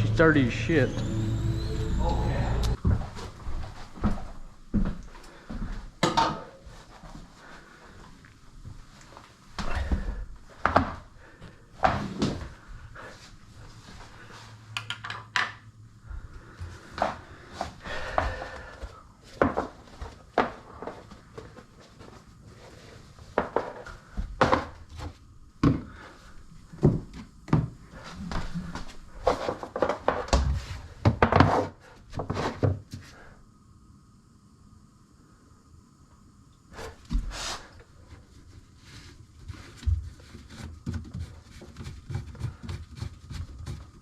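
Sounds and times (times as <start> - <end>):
brief low hum: 0.0 - 3.1.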